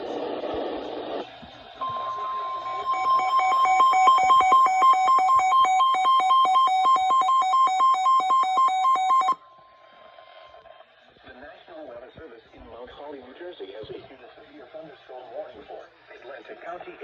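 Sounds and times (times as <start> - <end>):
steady alarm beep tone: 1.8 - 9.4
two-pitch electronic beeping: 1.8 - 9.4.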